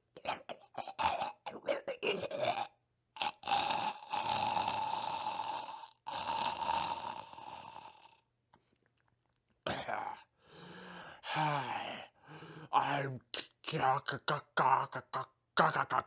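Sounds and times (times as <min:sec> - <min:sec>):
man making silly vocal noises: 0:00.2 - 0:02.7, 0:12.7 - 0:16.0
rough held vocal sound: 0:00.2 - 0:08.2.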